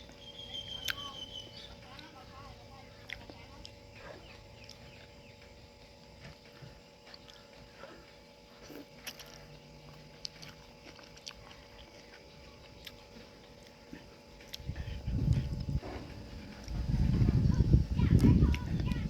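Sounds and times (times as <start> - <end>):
chewing and wet mouth clicks: 0.8 - 1.1, 3.0 - 3.8, 4.6 - 5.1, 7.1 - 7.6, 8.6 - 13.8, 14.4 - 15.8.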